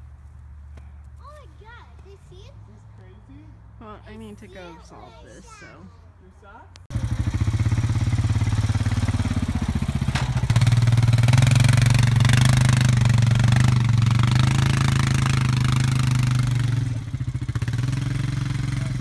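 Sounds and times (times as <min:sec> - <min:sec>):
atv engine running: 0:06.9 - 0:19.0.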